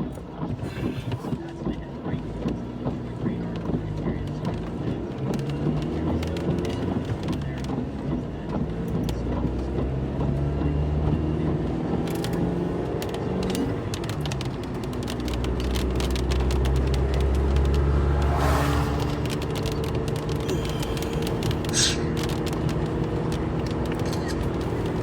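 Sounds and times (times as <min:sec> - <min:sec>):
vehicle engine and road noise: 0:00.0 - 0:25.0
sharp ticks: 0:11.8 - 0:25.0.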